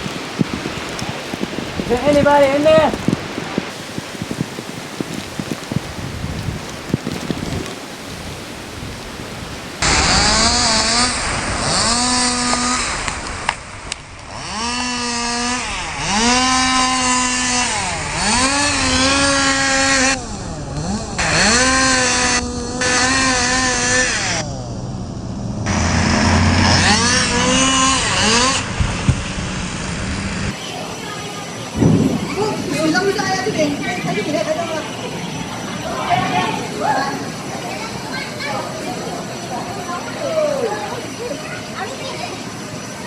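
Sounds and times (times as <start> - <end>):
chainsaw engine revving: 9.8 - 30.5.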